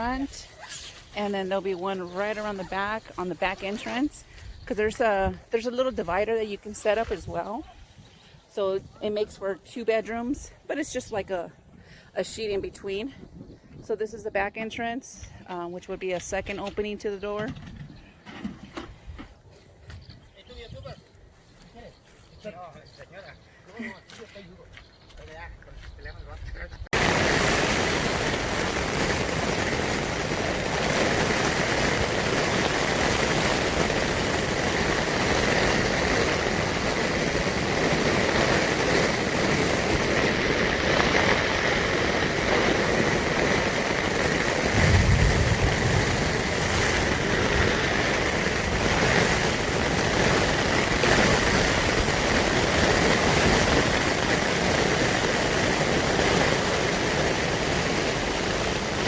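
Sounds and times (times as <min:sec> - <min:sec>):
heavy rain rushing: 0:00.0 - 0:01.1, 0:27.0 - 0:59.0
low rumble: 0:44.6 - 0:48.8.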